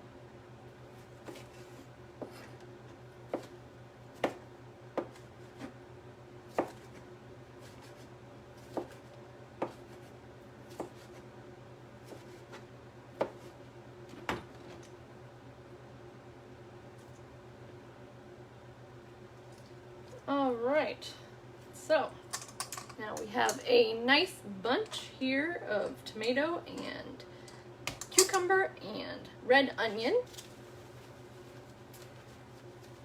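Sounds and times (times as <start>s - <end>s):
steady low hum: 0.0s - 33.0s
knife chopping on cutting board: 6.5s - 7.0s, 8.6s - 10.1s.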